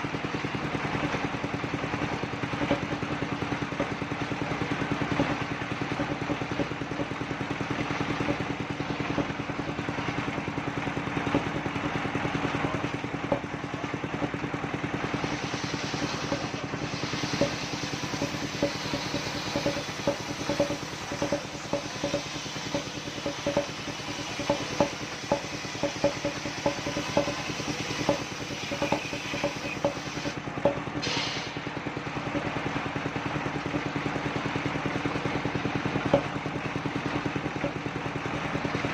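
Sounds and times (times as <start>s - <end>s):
sawmill engine running: 0.0s - 38.9s
knocks and clatter: 17.3s - 30.9s.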